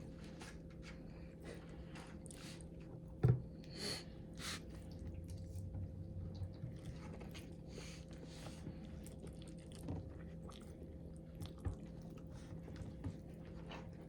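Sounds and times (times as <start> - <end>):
person chewing noodles: 8.1 - 12.8.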